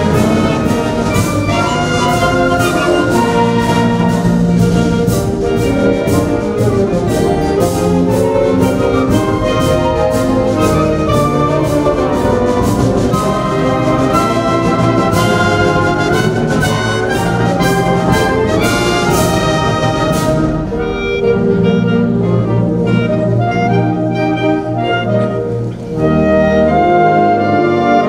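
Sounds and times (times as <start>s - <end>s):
percussion hits: 0.0s - 21.0s
brass band music: 0.0s - 28.0s.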